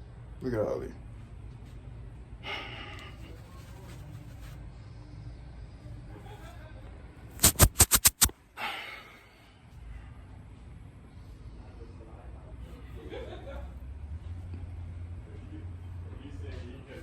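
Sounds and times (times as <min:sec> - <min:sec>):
sharp loud pops: 0:07.4 - 0:08.3.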